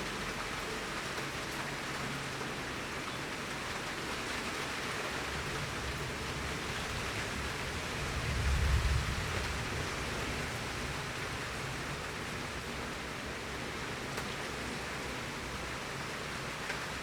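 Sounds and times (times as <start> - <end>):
heavy rain falling: 0.0 - 17.0.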